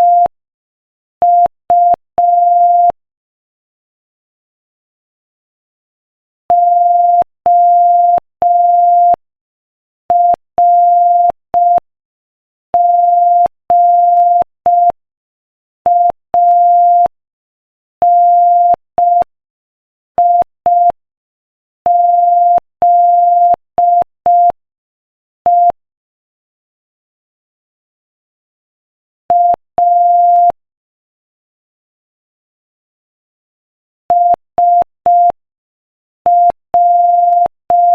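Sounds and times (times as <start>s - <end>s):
morse code beeps: 0.0s - 0.3s, 1.2s - 3.0s, 21.9s - 24.6s, 29.3s - 30.6s, 34.1s - 35.4s, 36.3s - 37.9s.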